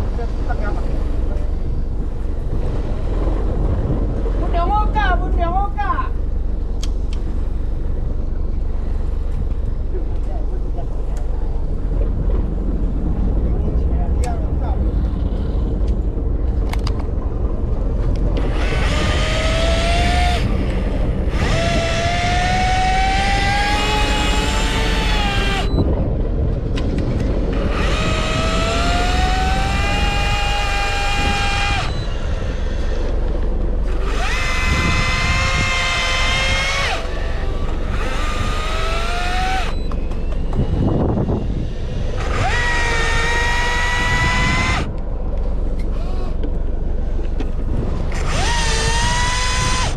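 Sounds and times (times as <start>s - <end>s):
boat engine rumbling: 0.0s - 49.9s
electric fishing reel whining: 18.4s - 25.9s, 27.5s - 45.0s, 45.8s - 46.5s, 48.1s - 49.9s.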